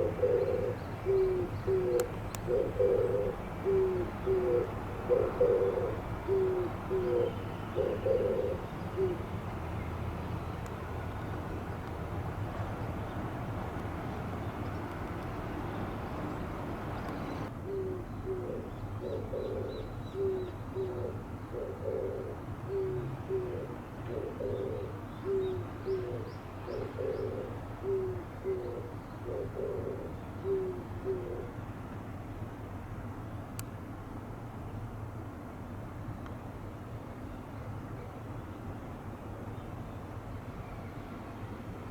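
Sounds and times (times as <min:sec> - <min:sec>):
dove cooing: 0:00.0 - 0:09.4, 0:15.4 - 0:31.6
steady noisy background: 0:00.0 - 0:41.9.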